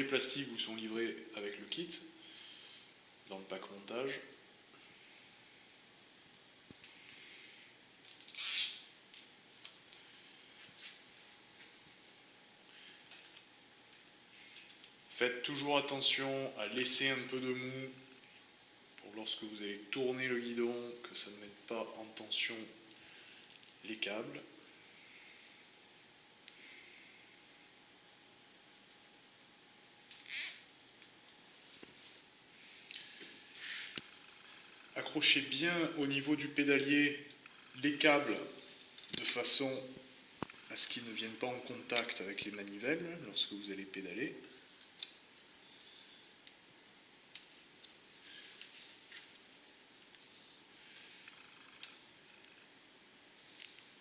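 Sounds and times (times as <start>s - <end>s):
faint room hiss: 0.0s - 54.0s
cable ties being pulled tight: 30.1s - 30.6s.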